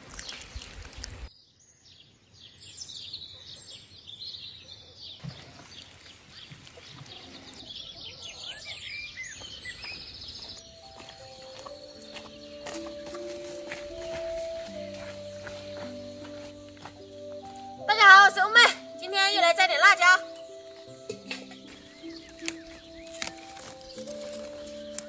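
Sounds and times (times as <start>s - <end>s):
birds chirping and calling: 2.5s - 25.0s.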